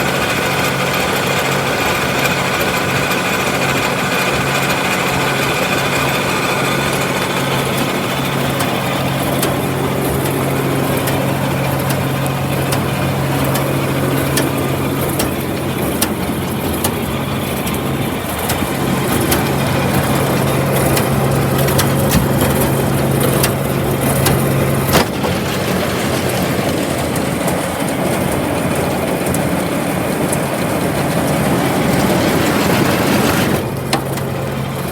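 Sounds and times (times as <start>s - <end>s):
grinder mixer humming: 0.0s - 34.9s
rattling clicks: 7.4s - 28.5s.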